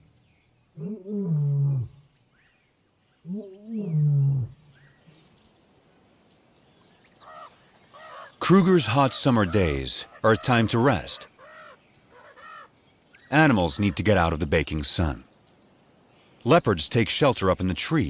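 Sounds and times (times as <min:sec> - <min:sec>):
faint bird chirps: 0:00.0 - 0:16.5
lion roaring: 0:00.8 - 0:02.0, 0:03.3 - 0:04.6.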